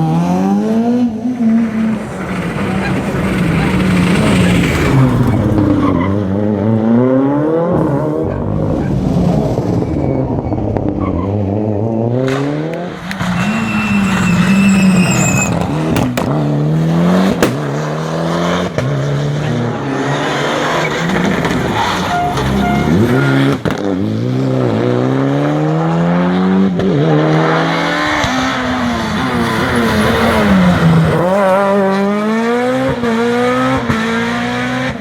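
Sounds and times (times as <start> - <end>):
rally car engine revving: 0.0 - 35.0
sharp cracks: 12.2 - 18.9.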